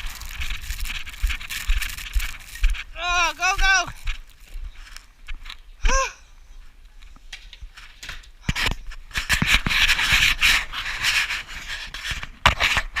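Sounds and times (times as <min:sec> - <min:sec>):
rustling rubbing noise: 0:00.0 - 0:05.5, 0:07.7 - 0:13.0.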